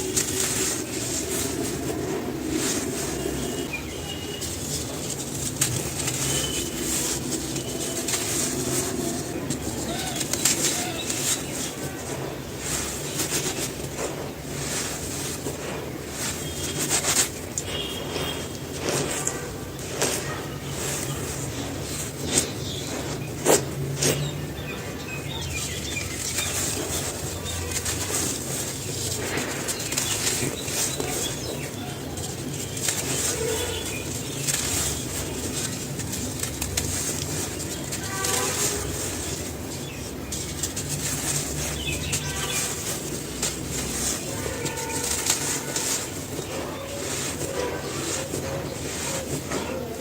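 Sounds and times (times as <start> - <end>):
dry cement crunching: 0.0 - 50.0.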